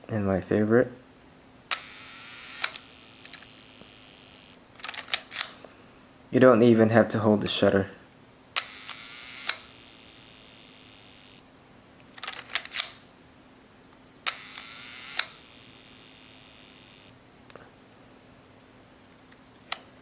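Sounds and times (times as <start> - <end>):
shutter gear train buzz: 1.7 - 4.6, 8.6 - 11.4, 14.3 - 17.1
camera shutter click: 1.7 - 5.6, 8.6 - 11.4, 12.2 - 13.0, 14.3 - 17.1.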